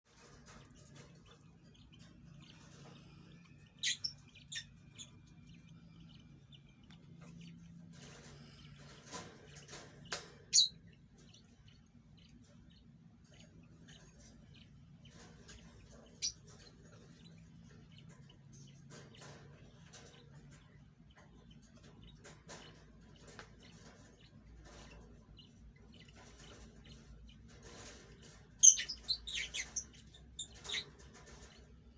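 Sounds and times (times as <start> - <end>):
birds chirping and squeaking: 0.1 - 31.9
faint low hum: 0.1 - 31.9.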